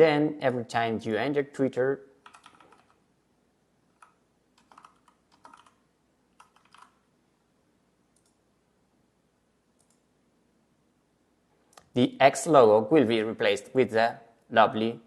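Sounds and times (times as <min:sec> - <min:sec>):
computer keyboard typing: 0:02.2 - 0:03.0, 0:03.9 - 0:05.8, 0:06.4 - 0:07.0.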